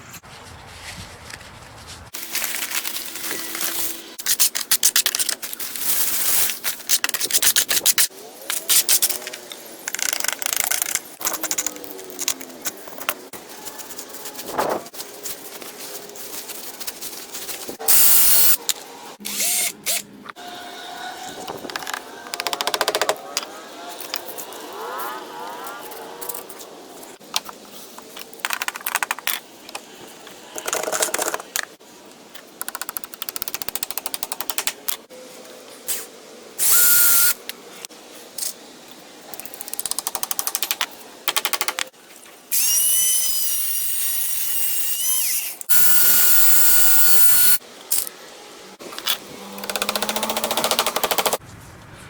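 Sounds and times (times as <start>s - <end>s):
power drill running: 19.3s - 20.0s, 36.6s - 37.4s, 42.6s - 47.6s.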